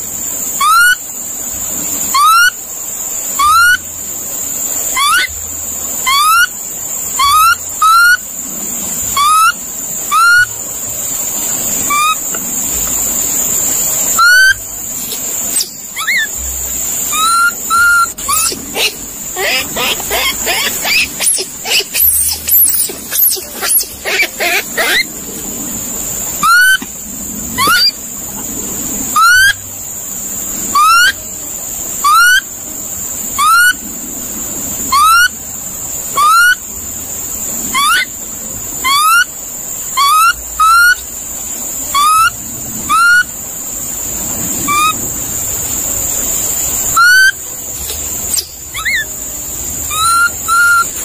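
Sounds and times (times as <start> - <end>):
steady high-pitched whine: 0.0 - 51.0
monkey whistle-like calls: 0.5 - 1.1, 2.1 - 2.6, 3.3 - 3.8, 4.8 - 5.4, 6.0 - 8.3, 9.0 - 10.5, 11.8 - 12.4, 14.1 - 14.6, 15.5 - 16.4, 17.0 - 25.1, 26.4 - 26.8, 27.6 - 28.0, 29.1 - 29.6, 30.7 - 31.2, 32.0 - 32.5, 33.4 - 33.8, 34.9 - 35.4, 36.1 - 36.6, 37.7 - 38.2, 38.8 - 39.3, 39.9 - 41.1, 41.9 - 43.3, 44.6 - 45.0, 46.9 - 47.4, 48.3 - 49.2, 49.8 - 51.0.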